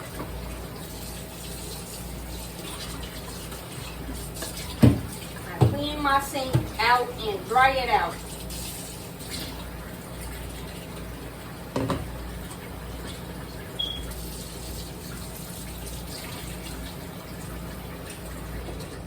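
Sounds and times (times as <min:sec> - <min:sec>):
tap running water into sink: 0:00.0 - 0:07.0, 0:08.1 - 0:19.0
brief high squeak: 0:13.8 - 0:14.1.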